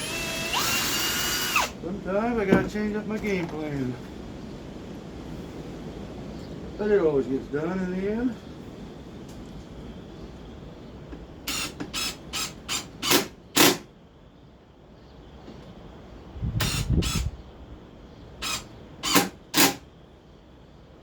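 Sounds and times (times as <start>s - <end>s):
nail gun firing into wood: 11.5s - 13.8s, 18.5s - 19.8s.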